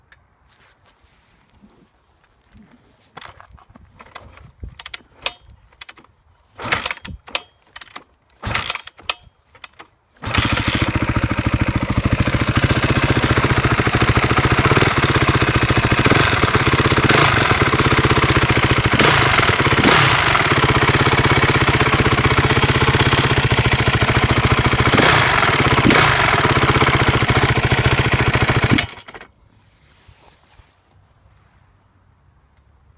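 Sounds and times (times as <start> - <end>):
motorcycle engine starting and running: 4.0 - 29.3
engine ticking: 8.4 - 29.2.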